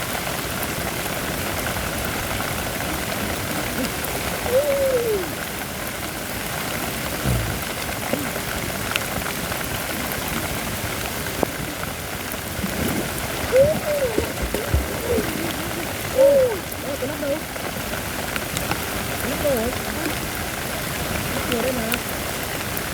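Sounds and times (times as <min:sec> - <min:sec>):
steady rain: 0:00.0 - 0:22.9
rising and falling calls: 0:13.5 - 0:17.4.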